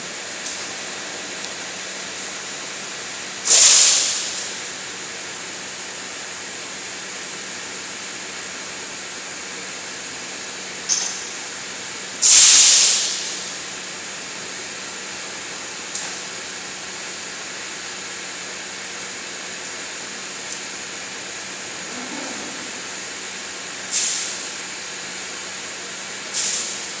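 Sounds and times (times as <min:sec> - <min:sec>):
furnace line hiss and hum: 0:00.0 - 0:27.0
bursts of hissing air: 0:03.4 - 0:04.6, 0:12.2 - 0:13.6, 0:23.8 - 0:24.6, 0:26.3 - 0:27.0.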